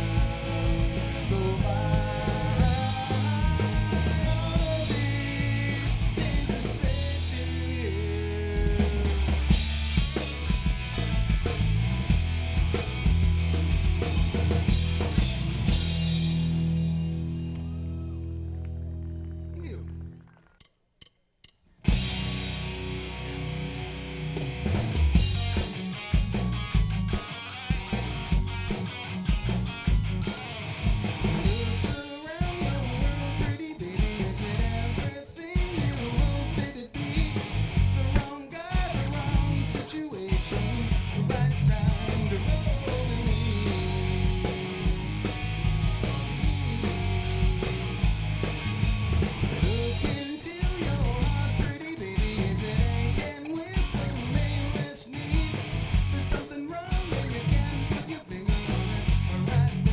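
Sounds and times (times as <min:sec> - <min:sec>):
electric guitar: 0:00.0 - 0:20.0, 0:21.8 - 0:59.9
bass and drums: 0:00.0 - 0:20.3, 0:21.8 - 0:59.9.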